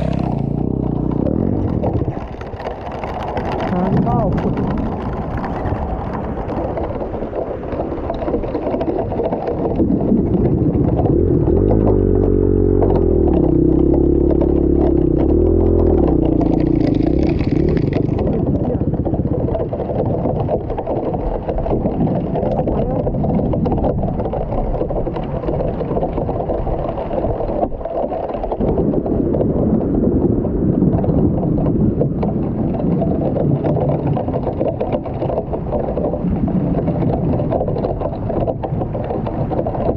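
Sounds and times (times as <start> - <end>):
off-road vehicle engine revving: 0.0 - 2.0, 10.9 - 18.3
steady rumbling noise: 0.0 - 39.9.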